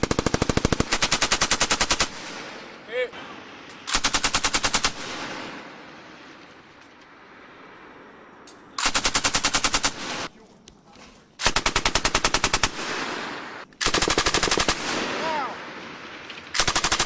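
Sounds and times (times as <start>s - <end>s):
gunfire echo: 11.4s - 17.0s
machine gun bursts: 16.6s - 17.0s.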